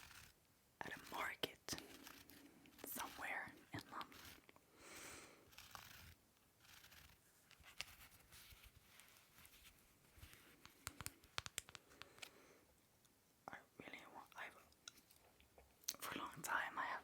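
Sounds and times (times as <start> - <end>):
soft rustles and scrapes: 0.0 - 12.4
sharp taps and clicks: 10.6 - 12.3.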